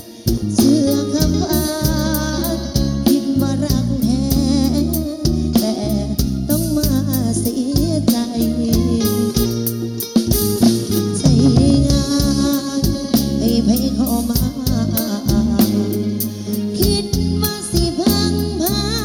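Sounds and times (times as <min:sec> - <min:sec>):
bass: 0:00.0 - 0:19.0
bending lead melody: 0:00.0 - 0:19.0
drum kit beat: 0:00.0 - 0:19.0.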